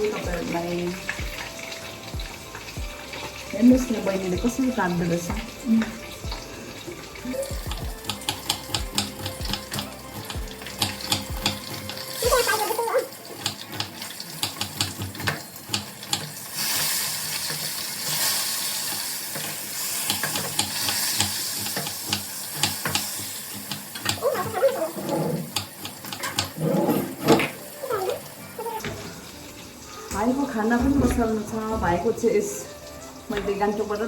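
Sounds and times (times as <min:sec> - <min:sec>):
kitchen tap running: 0:00.0 - 0:34.0.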